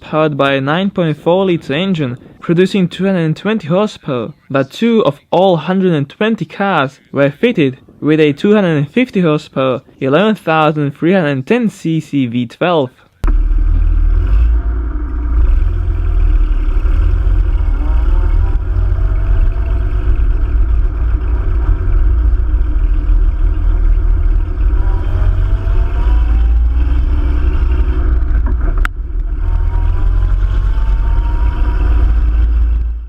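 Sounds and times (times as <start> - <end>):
car engine accelerating: 13.2 - 33.0.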